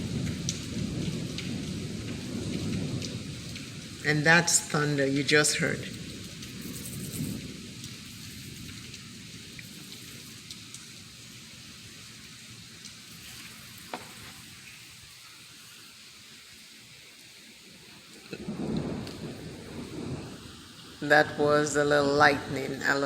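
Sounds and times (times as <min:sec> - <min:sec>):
heavy rain falling: 0:00.0 - 0:23.0.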